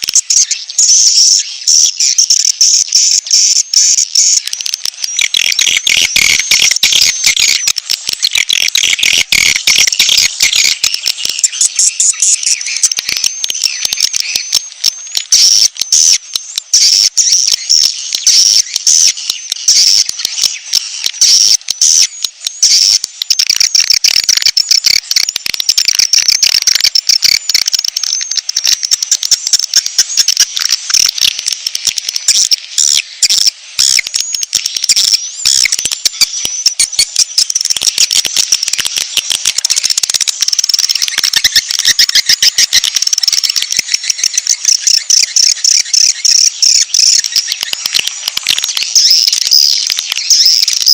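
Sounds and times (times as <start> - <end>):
high-pitched bird chattering and trilling: 0.0 - 50.9.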